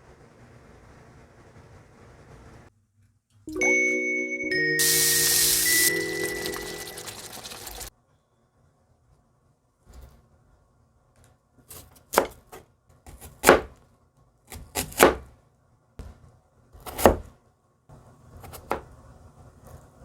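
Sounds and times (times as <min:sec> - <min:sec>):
knife chopping on cutting board: 0:11.7 - 0:12.5, 0:13.1 - 0:13.8, 0:14.5 - 0:15.3, 0:16.8 - 0:17.3.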